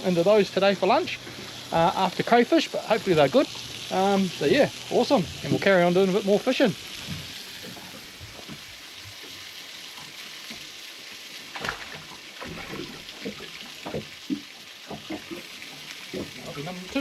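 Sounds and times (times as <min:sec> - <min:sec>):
sausages sizzling in a pan: 0:00.0 - 0:11.4.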